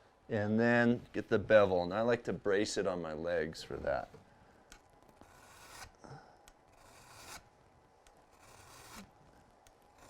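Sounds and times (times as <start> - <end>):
hand file strokes on metal: 5.2 - 6.0, 6.7 - 7.5, 8.3 - 9.1.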